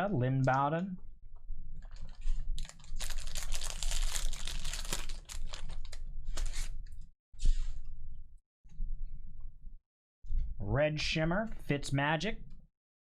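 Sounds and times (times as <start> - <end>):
foil wrapper crinkling: 1.8 - 6.7.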